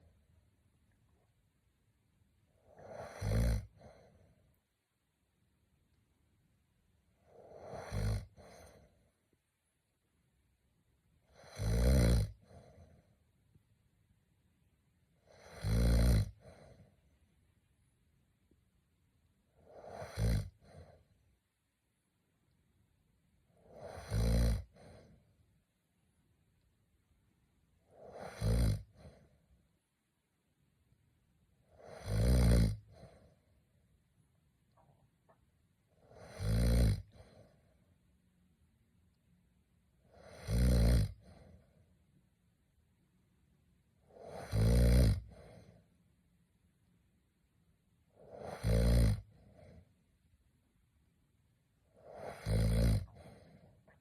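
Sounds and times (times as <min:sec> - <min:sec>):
man snoring: 0:02.6 - 0:04.1, 0:07.3 - 0:08.8, 0:11.3 - 0:12.8, 0:15.3 - 0:16.8, 0:19.6 - 0:20.9, 0:23.6 - 0:25.1, 0:27.9 - 0:29.2, 0:31.8 - 0:33.2, 0:36.0 - 0:37.4, 0:40.1 - 0:41.4, 0:44.1 - 0:45.6, 0:48.2 - 0:49.7, 0:52.0 - 0:53.5
soft breath: 0:49.2 - 0:50.0, 0:53.1 - 0:54.0.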